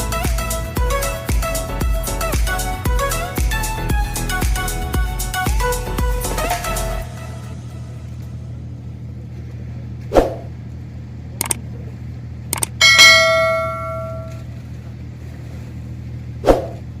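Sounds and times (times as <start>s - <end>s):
low engine drone: 0.0s - 17.0s
sharp clicks: 12.6s - 12.8s
loud ringing metallic clang: 12.7s - 14.4s.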